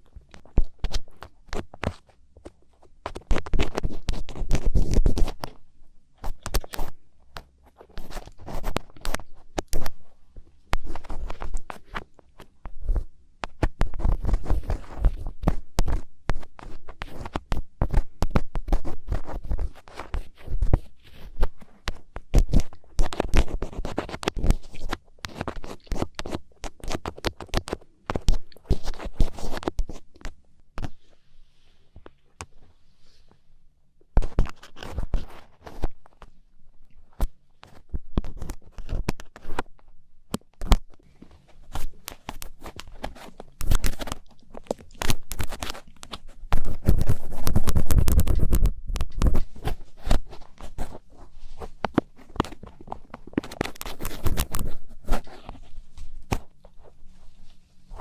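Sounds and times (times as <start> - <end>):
ear picks scratching inside ear: 3.1 - 5.6, 6.2 - 30.4, 40.6 - 58.0.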